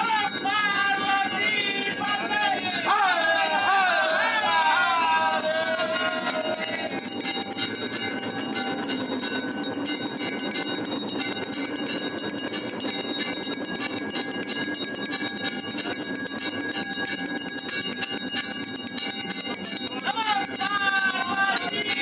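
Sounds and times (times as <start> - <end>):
temple bells ringing: 0.0 - 22.0.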